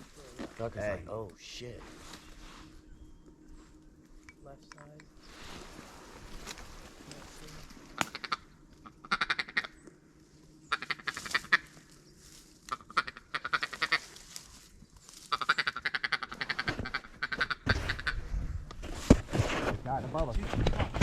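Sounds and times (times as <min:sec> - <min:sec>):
duck quacking rapidly: 0:09.0 - 0:09.8, 0:10.7 - 0:11.7, 0:12.7 - 0:14.0, 0:15.3 - 0:18.2.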